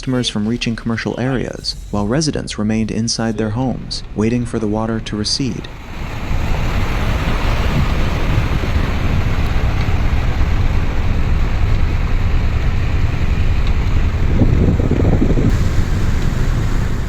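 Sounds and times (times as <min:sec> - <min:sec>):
floodwater rushing: 0:00.0 - 0:17.0
wind buffeting microphone: 0:05.5 - 0:17.0.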